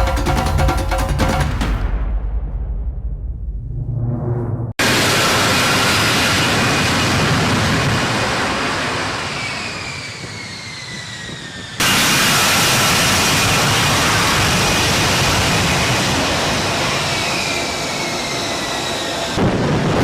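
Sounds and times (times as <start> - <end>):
fighter jet passing: 3.3 - 10.0, 11.7 - 20.0
falling jet whine: 3.5 - 20.0.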